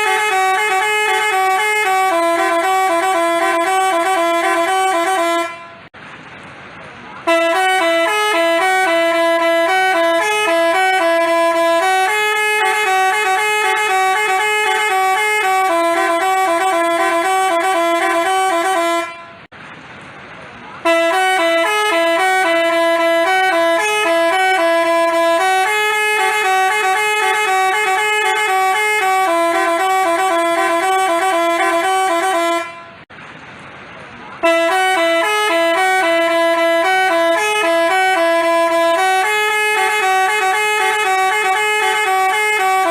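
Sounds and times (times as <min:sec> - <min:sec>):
multi-tone bus horn tune: 0:00.0 - 0:06.0, 0:07.2 - 0:19.5, 0:20.8 - 0:33.1, 0:34.4 - 0:42.9.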